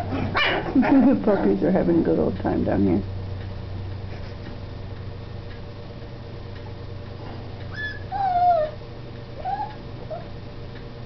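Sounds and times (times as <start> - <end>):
steady low hum: 0.0 - 11.0
puppy whining: 7.7 - 8.8, 9.4 - 10.4.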